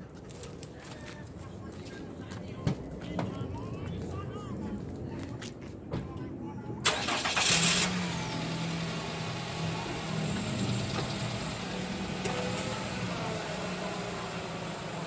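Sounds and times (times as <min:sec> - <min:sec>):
car engine idling: 0:06.8 - 0:15.0.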